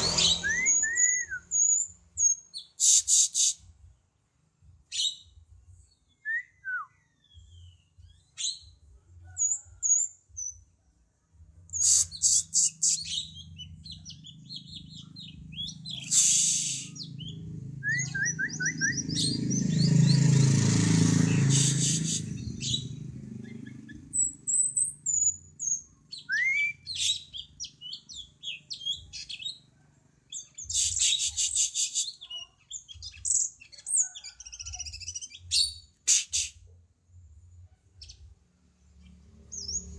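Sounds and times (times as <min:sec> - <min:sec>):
songbird singing: 0:00.0 - 0:04.2, 0:04.9 - 0:10.7, 0:11.7 - 0:36.5, 0:38.9 - 0:39.9.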